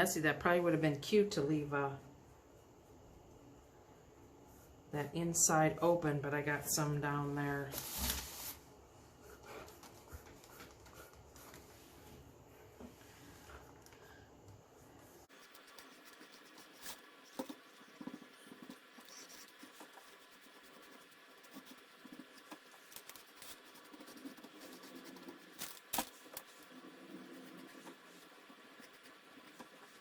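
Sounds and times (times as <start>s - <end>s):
foam brush scraping paint: 15.2s - 30.0s.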